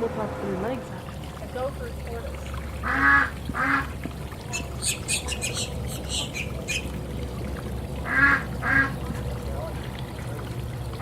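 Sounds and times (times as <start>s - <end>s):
bird squawking: 4.5s - 6.9s.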